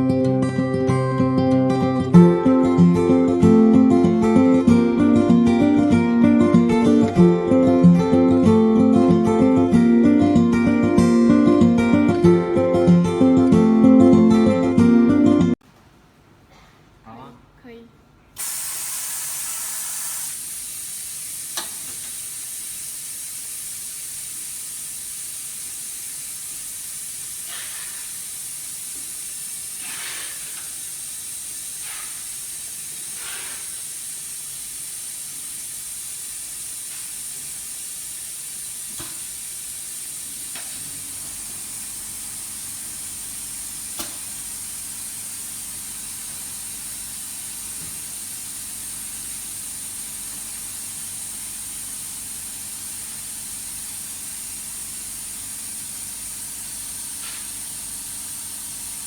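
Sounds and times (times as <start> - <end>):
high-pitched hiss: 18.4 - 55.6.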